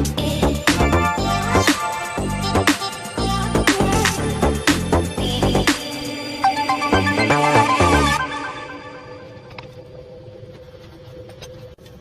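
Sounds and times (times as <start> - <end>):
electronic music with beat: 0.0 - 9.5.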